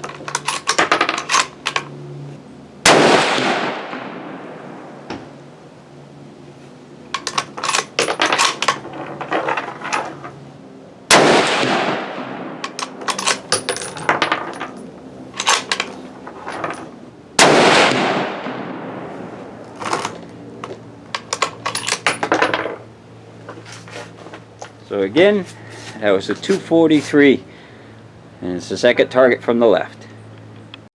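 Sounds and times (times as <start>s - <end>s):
rifle shots echoing: 2.9s - 4.6s, 11.1s - 13.0s, 17.4s - 19.1s
rifle bolt clicking: 7.2s - 7.7s, 12.6s - 13.5s, 15.4s - 15.9s.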